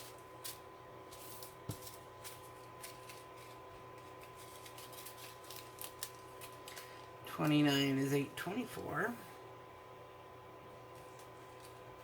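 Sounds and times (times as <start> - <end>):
low electrical hum: 0.0 - 12.0
plastic bags crinkling: 1.2 - 7.7.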